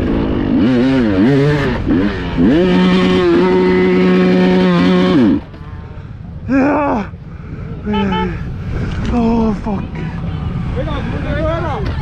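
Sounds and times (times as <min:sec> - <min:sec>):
motorcycle engine revving: 0:00.0 - 0:06.0.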